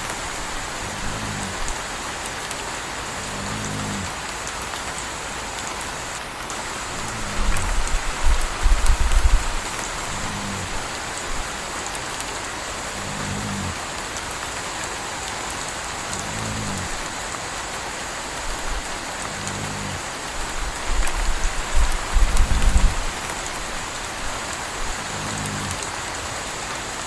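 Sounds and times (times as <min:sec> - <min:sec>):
steady rain falling: 0:00.0 - 0:27.0
puppy snoring: 0:00.5 - 0:01.9, 0:03.2 - 0:04.2, 0:06.8 - 0:11.5, 0:12.9 - 0:13.8, 0:16.1 - 0:17.1, 0:18.5 - 0:23.2, 0:24.3 - 0:25.9.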